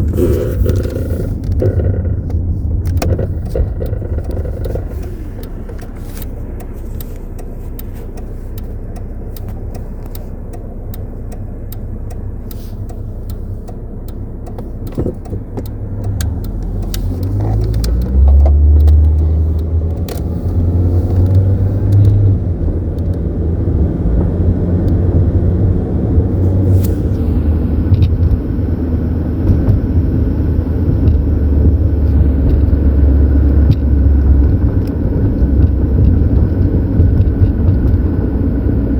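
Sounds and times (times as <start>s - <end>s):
sharp clicks: 0.0s - 23.2s
pickup engine running: 0.0s - 38.9s.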